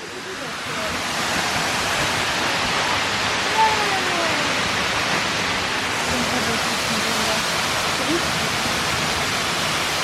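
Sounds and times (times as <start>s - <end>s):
waterfall rushing: 0.0s - 10.0s
faint voices: 3.4s - 4.8s.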